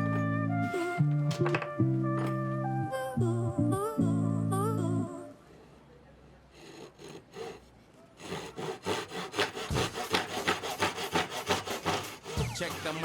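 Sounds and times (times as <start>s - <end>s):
hand tool stroking wood: 6.6s - 13.0s.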